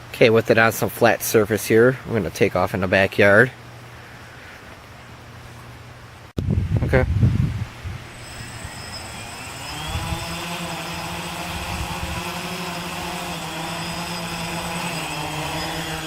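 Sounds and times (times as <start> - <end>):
quadcopter motors whining: 8.1 - 16.0.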